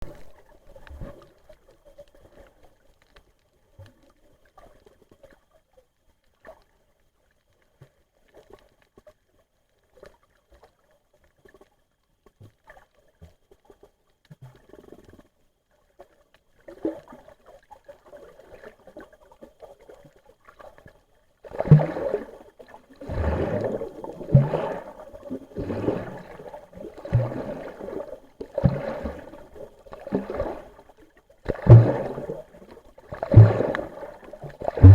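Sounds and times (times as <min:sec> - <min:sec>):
faint clicks and crackles: 0:00.0 - 0:21.1
muffled underwater water noise: 0:00.0 - 0:34.9
gurgling water surges: 0:21.5 - 0:34.9.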